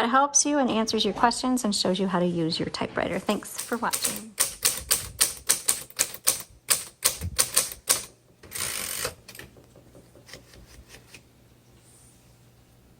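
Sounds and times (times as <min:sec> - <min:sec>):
typewriter keys clacking: 0:03.5 - 0:11.1.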